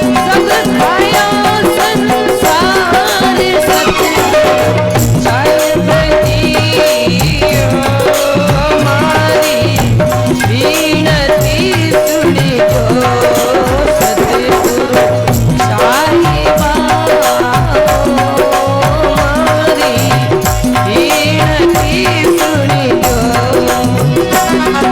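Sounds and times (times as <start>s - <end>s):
drum and rattle beat: 0.0s - 24.9s
wavering instrumental melody: 19.8s - 24.9s.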